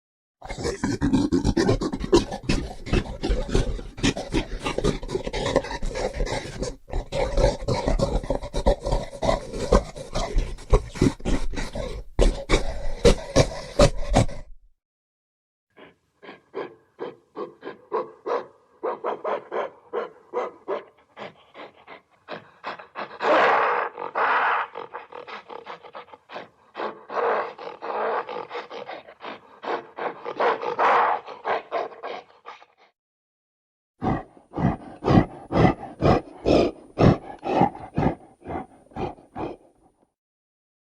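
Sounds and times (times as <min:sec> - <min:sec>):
gorilla grunting: 0:00.4 - 0:14.6, 0:15.8 - 0:32.8, 0:34.0 - 0:39.9
breathy pulses: 0:34.0 - 0:39.8.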